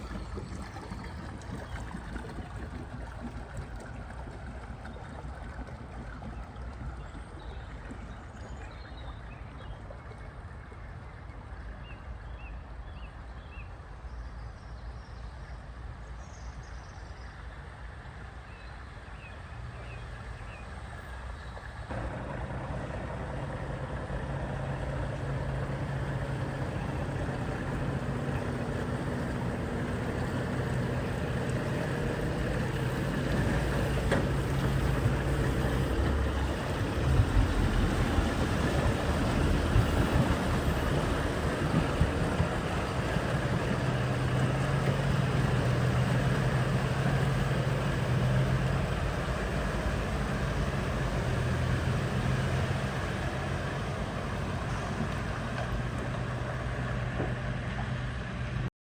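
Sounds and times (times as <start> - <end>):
heavy truck engine running: 21.9 - 58.7.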